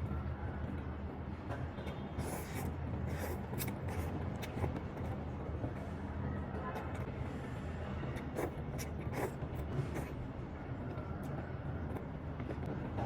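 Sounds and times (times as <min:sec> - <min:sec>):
wet slurping: 0:02.2 - 0:04.8, 0:08.2 - 0:10.2.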